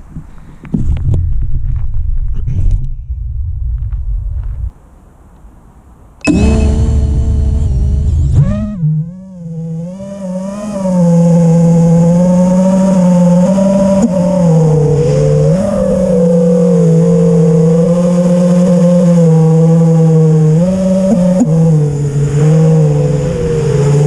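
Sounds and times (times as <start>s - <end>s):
quadcopter motors whining: 6.2s - 24.0s.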